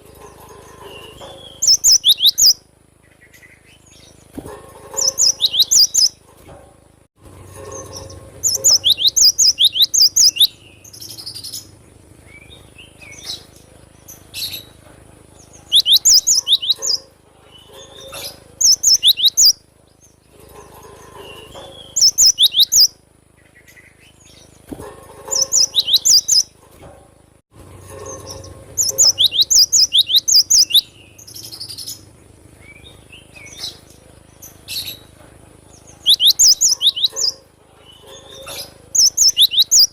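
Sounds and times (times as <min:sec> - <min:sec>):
bird singing high falling notes: 0:01.0 - 0:02.6, 0:08.4 - 0:10.9, 0:28.8 - 0:31.8.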